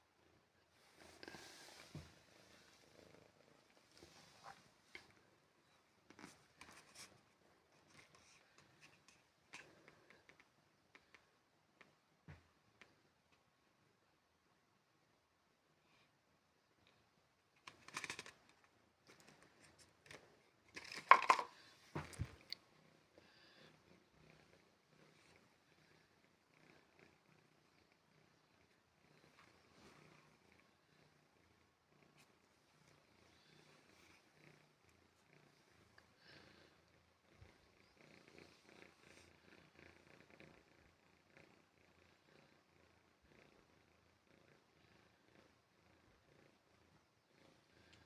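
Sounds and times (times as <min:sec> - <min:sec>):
cat purring: 0:00.0 - 0:14.9, 0:15.6 - 0:48.0
close rustling and scraping: 0:00.8 - 0:05.3, 0:06.0 - 0:10.3.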